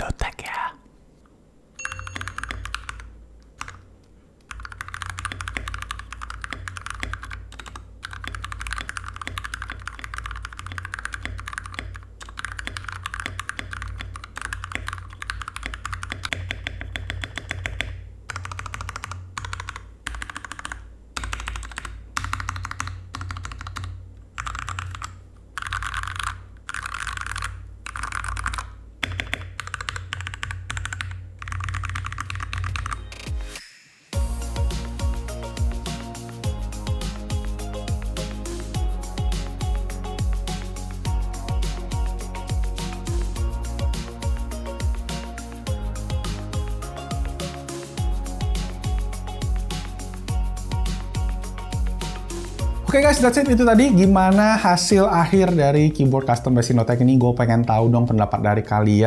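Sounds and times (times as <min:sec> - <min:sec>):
mechanical keyboard typing: 0:01.8 - 0:03.9, 0:04.5 - 0:33.4.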